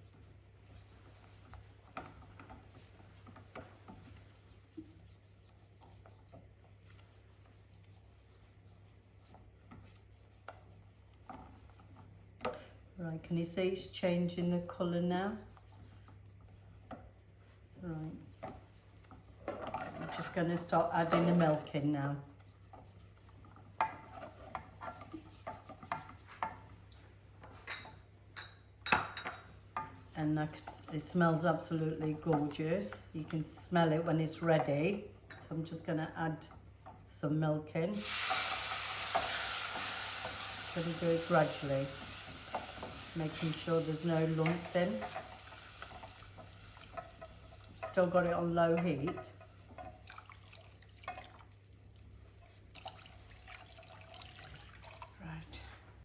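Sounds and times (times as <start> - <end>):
utensil scraping in pan: 38.0 - 50.6.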